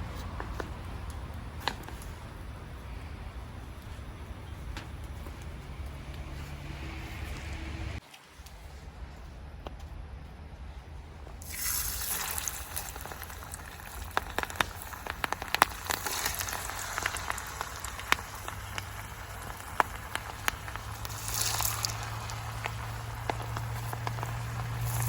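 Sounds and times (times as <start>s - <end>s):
spitting fat pops and crackles: 0.1s - 6.3s, 11.4s - 25.0s
steak sizzling on a griddle: 11.4s - 25.0s.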